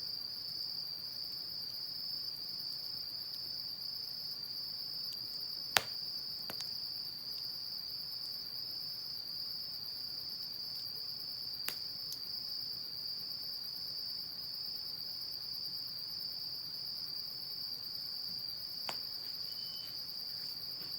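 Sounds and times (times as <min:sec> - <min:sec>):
high insect trill: 0:01.2 - 0:20.9
wood fire popping: 0:05.1 - 0:06.9.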